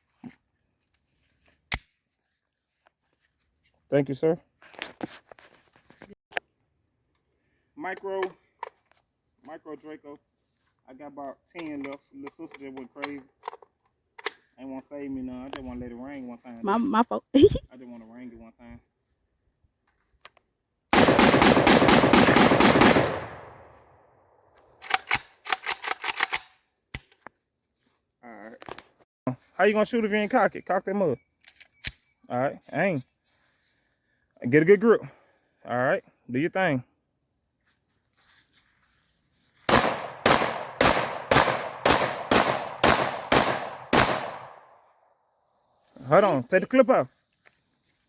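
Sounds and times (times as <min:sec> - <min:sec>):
echoing gunshots: 0:20.9 - 0:23.8, 0:39.7 - 0:44.7
rapid pistol gunfire: 0:21.0 - 0:23.6, 0:39.7 - 0:44.5.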